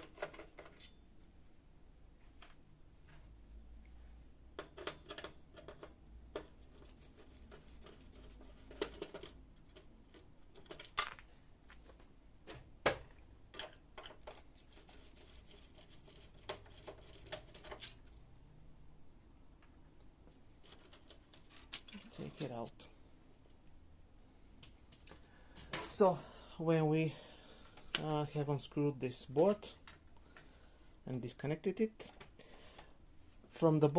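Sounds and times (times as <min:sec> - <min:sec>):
plastic and metal parts clicking: 0:08.5 - 0:14.5, 0:20.6 - 0:22.5.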